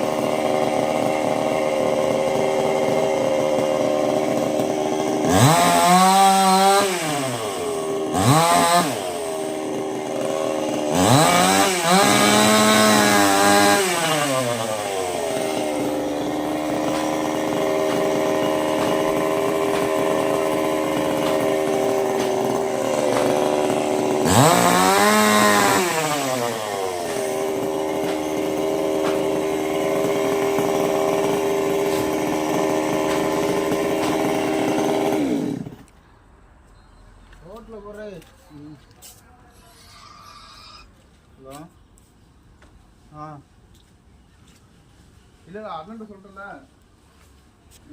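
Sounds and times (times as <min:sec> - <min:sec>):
two-stroke chainsaw revving: 0:00.0 - 0:35.9.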